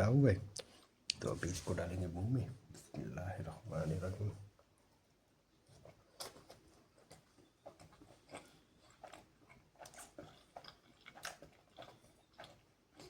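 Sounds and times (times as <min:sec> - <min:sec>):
mouth clicks and smacks: 0:00.5 - 0:01.3
faint chewing: 0:00.5 - 0:13.0.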